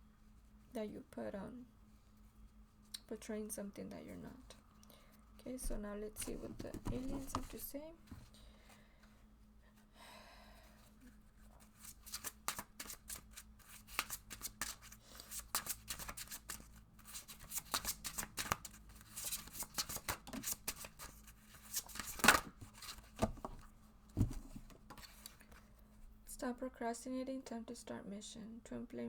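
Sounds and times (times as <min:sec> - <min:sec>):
cards shuffling: 0:06.2 - 0:07.7, 0:11.6 - 0:25.6.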